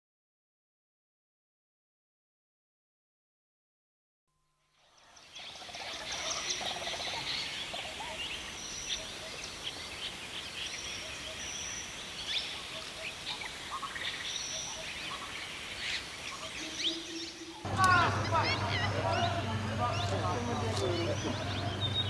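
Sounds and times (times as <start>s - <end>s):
steady outdoor hiss: 4.8s - 22.0s
birds chirping: 5.0s - 22.0s.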